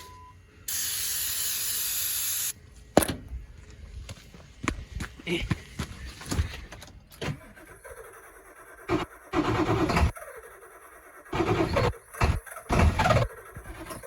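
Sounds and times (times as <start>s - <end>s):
diesel engine cranking and firing: 7.0s - 14.0s.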